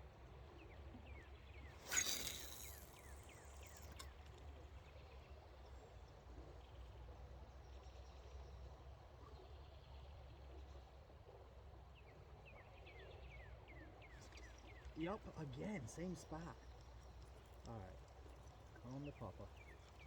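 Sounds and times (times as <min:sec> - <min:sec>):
fishing rod whoosh: 0:01.8 - 0:04.0.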